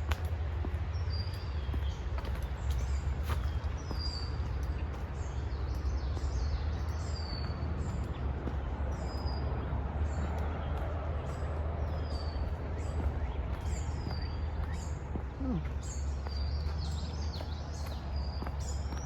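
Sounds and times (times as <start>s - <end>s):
small birds chirping: 0.0s - 19.0s.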